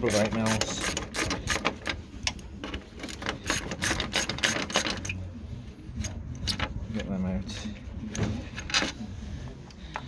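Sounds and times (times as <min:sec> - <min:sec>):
ratchet spanner clicking: 0:00.0 - 0:02.4, 0:03.1 - 0:05.2.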